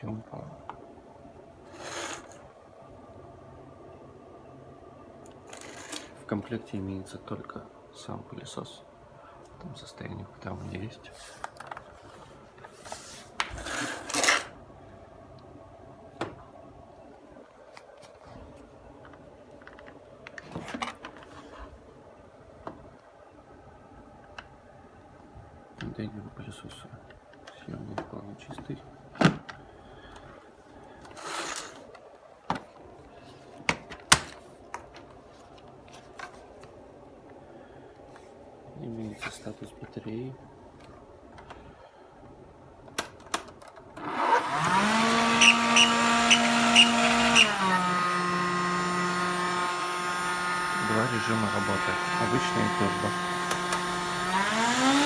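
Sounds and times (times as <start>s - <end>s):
plastic scraping rub: 1.7s - 2.4s, 31.0s - 31.9s.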